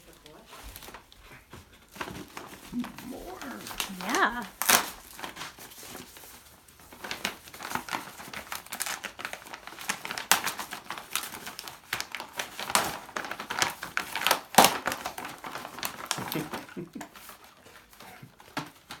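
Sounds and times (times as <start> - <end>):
wrapping paper crinkling and tearing: 1.8 - 19.0.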